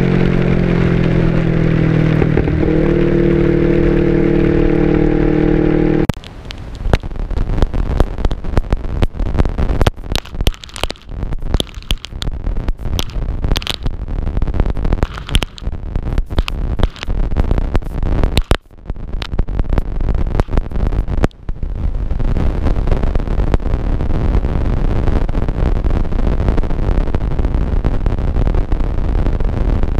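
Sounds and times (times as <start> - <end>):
wind rushing over microphone: 0.0 - 29.9.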